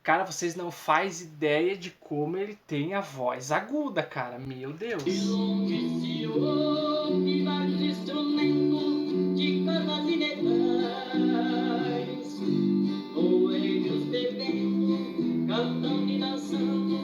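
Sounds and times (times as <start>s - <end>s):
plucked guitar: 4.9s - 17.0s
male voices singing in harmony: 5.0s - 17.0s.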